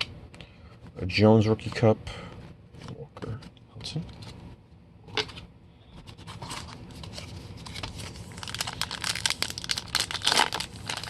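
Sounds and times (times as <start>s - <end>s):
wrapper crinkling and tearing: 7.6s - 11.0s.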